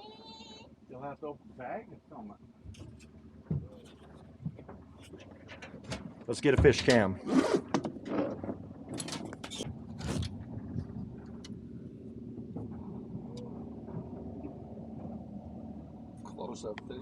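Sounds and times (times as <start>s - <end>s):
boat motor running: 0.0s - 17.0s.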